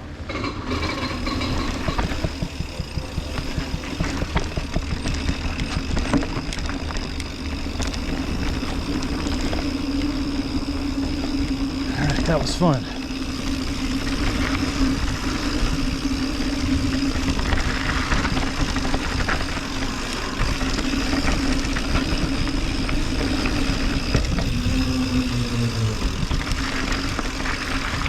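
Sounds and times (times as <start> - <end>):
bike tyre and wind noise: 0.0 - 28.0
mechanical hum: 0.0 - 28.0
clicks and rattles: 0.2 - 10.1.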